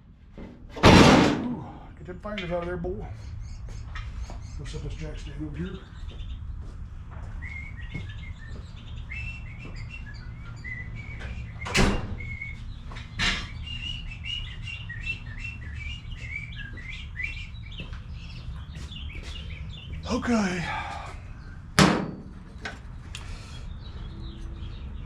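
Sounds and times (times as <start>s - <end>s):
small birds chirping: 1.6s - 21.8s, 22.4s - 25.0s
sharp knocks: 21.8s - 22.5s.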